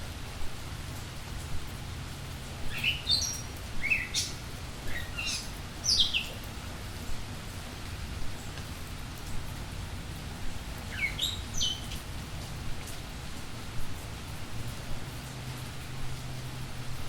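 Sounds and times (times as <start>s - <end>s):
rain hissing: 0.0s - 17.0s
songbird chirping: 2.7s - 6.5s, 10.8s - 12.0s.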